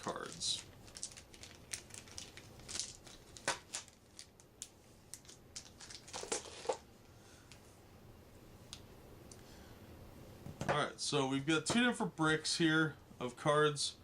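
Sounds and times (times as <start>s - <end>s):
plastic crinkling: 0.0s - 6.8s.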